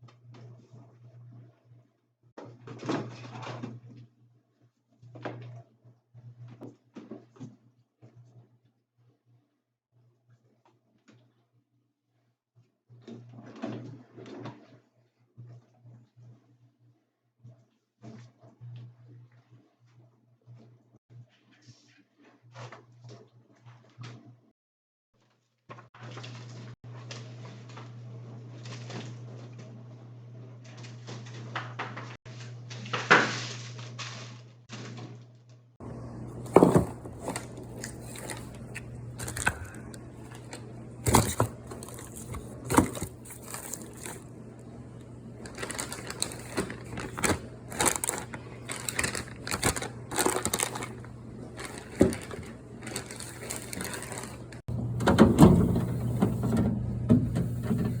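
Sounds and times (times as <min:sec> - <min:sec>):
steady low hum: 0:35.8 - 0:58.0
food containers clacking and knocking: 0:36.2 - 0:44.3, 0:45.4 - 0:58.0
packaging crinkling: 0:36.2 - 0:54.6.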